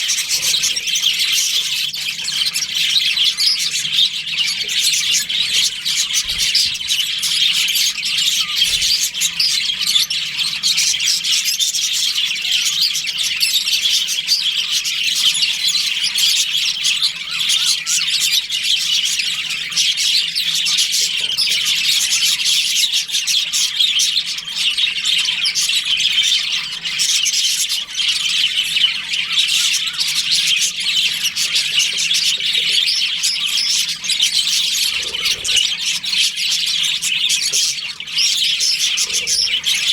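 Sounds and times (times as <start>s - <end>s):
bird squawks: 0.0s - 39.9s
budgerigars chattering and chirping: 0.0s - 39.9s.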